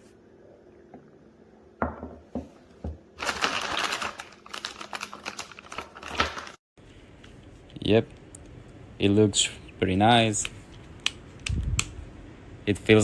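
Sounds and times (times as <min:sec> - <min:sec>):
objects knocking: 0:01.8 - 0:03.0.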